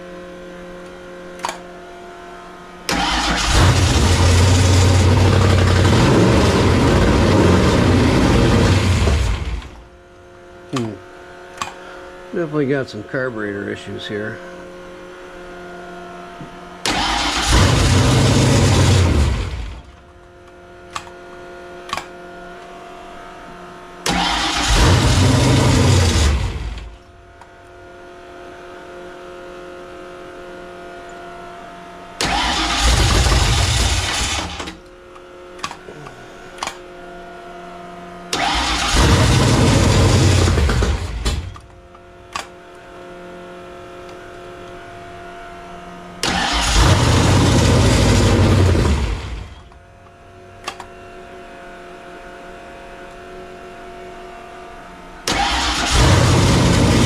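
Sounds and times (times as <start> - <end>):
car engine starting and dying: 2.9 - 9.8, 16.8 - 20.0, 24.0 - 27.1, 32.2 - 34.8, 38.3 - 41.7, 46.2 - 49.8, 55.2 - 57.0.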